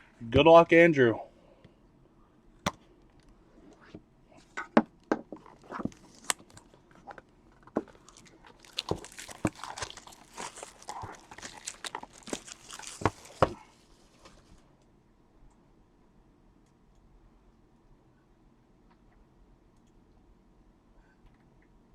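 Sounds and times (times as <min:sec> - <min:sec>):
plastic wrapping crinkling and tearing: 0:05.4 - 0:14.6.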